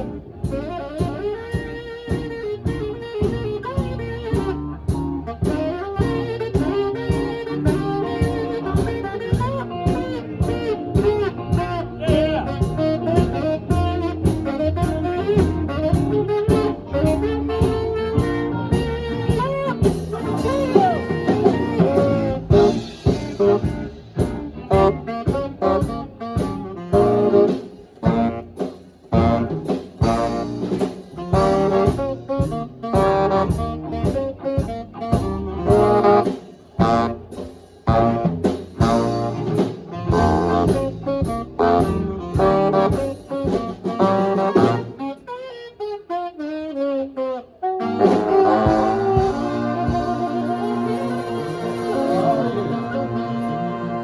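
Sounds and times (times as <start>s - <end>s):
swing band playing jazz: 0.0s - 54.0s.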